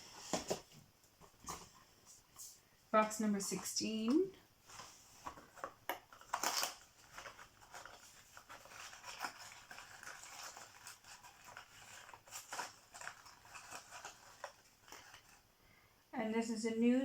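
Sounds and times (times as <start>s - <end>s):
cardboard packaging rustling: 3.0s - 15.5s.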